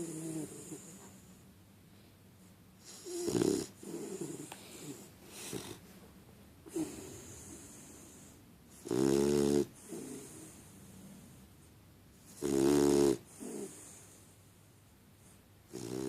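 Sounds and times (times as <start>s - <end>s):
loud pitched snores: 0.0s - 0.9s, 2.9s - 5.8s, 8.8s - 10.5s, 12.4s - 14.0s, 15.7s - 16.0s.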